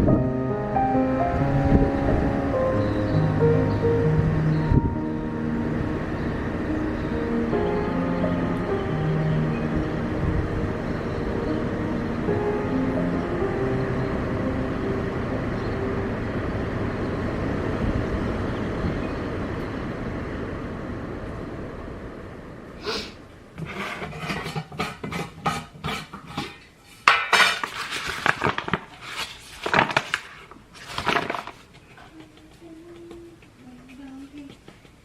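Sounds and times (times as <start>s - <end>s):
steady rushing noise: 0.0s - 22.8s
dishes and cutlery clattering: 23.6s - 28.4s.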